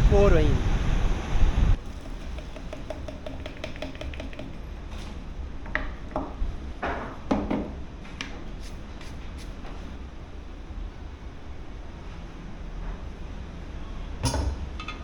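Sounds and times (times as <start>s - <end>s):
low rumble of wind: 0.0s - 2.1s
sharp clicks and knocks: 2.0s - 4.6s.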